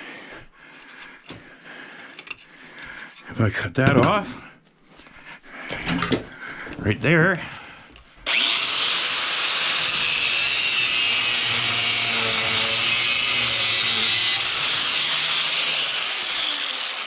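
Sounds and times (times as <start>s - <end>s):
power tool whining: 8.2s - 17.0s.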